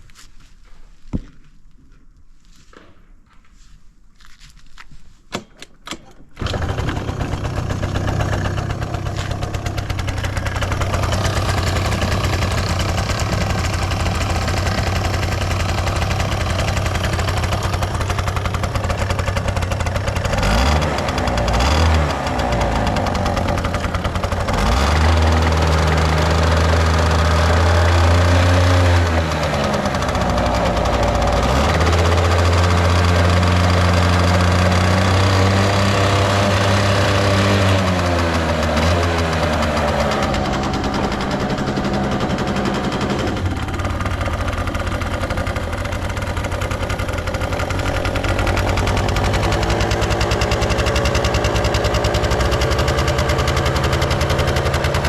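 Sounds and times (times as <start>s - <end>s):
starter clicks: 4.8s - 19.6s
scooter engine idling and revving: 6.4s - 55.0s.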